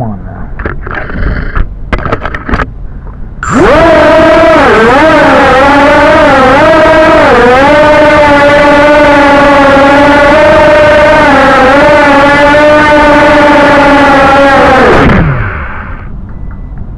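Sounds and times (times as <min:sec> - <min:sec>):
person imitating drone buzzing: 0:03.4 - 0:16.1.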